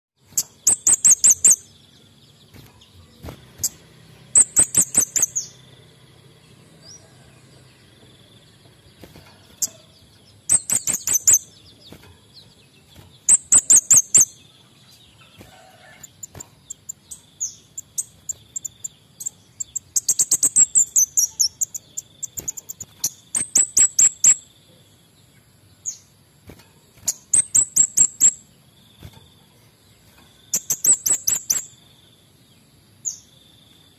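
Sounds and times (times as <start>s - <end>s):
bird singing high sharp notes: 0.3s - 5.9s, 9.0s - 24.5s, 27.0s - 28.6s, 30.5s - 31.8s.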